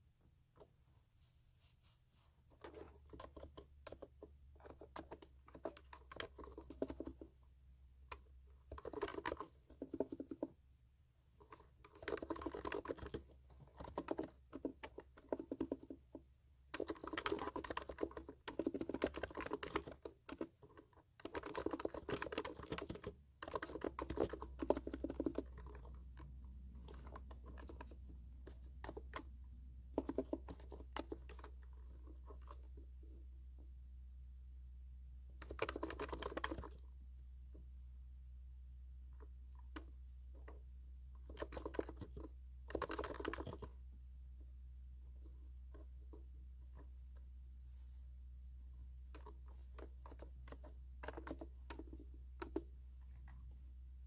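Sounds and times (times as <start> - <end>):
keyboard typing: 2.6 - 7.3, 8.1 - 10.6, 11.4 - 32.8, 35.4 - 36.9, 41.2 - 43.8, 49.1 - 52.7.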